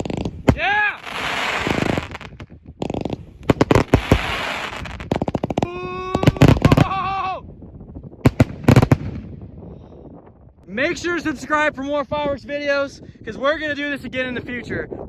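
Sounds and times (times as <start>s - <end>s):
firework crackle: 0.0s - 6.9s
fireworks launching and bursting: 0.0s - 7.2s, 8.1s - 9.6s.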